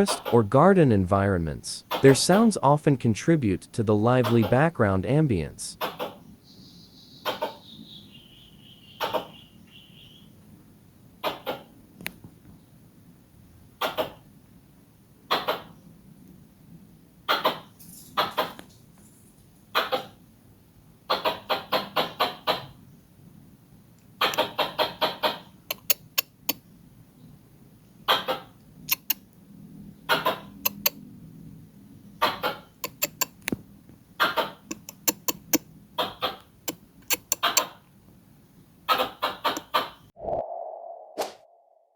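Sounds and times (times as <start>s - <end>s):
squirrel chirping: 5.8s - 10.4s, 24.2s - 26.6s, 28.1s - 29.2s, 30.1s - 31.0s, 32.2s - 33.4s, 34.2s - 37.8s, 38.9s - 40.0s.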